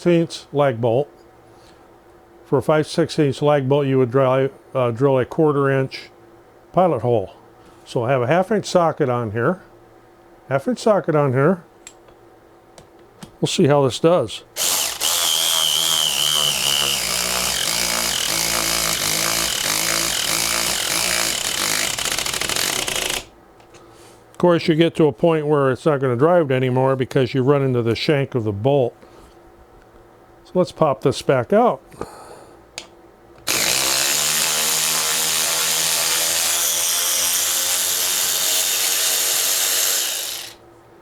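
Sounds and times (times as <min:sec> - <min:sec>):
cordless ratchet driving bolt: 0:14.6 - 0:23.3
high motor whine: 0:14.6 - 0:23.3.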